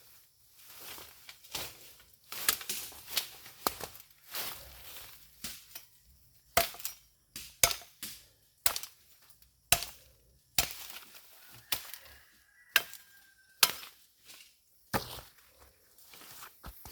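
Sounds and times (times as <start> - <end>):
axe chopping wood: 6.5 - 9.0, 9.7 - 12.0, 12.7 - 13.0, 13.6 - 14.0.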